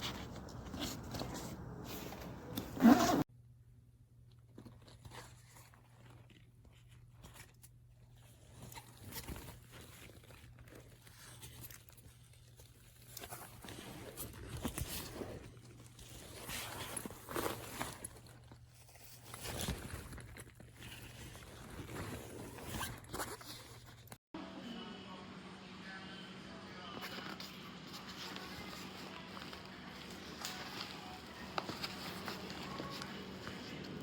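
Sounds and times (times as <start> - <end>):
backpack rustling and scraping: 0.0 - 3.3, 13.0 - 24.2, 27.0 - 34.0.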